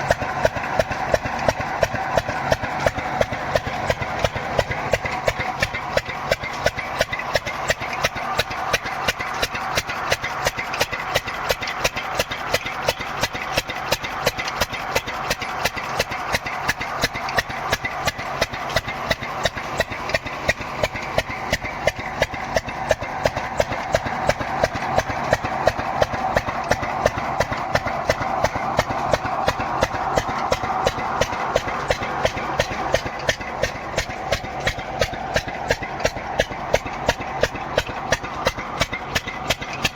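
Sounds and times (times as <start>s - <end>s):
pump engine knocking: 0.0s - 39.9s.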